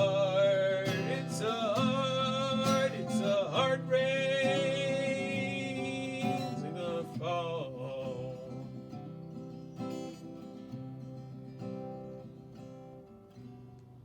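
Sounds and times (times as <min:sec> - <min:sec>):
man singing long notes: 0:00.0 - 0:08.8
acoustic guitar: 0:00.0 - 0:14.0.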